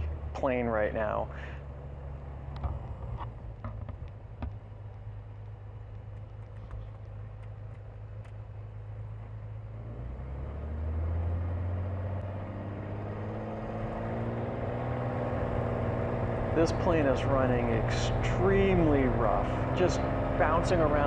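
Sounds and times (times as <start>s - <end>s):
propeller plane engine running rough: 0.0s - 10.2s, 12.2s - 21.0s.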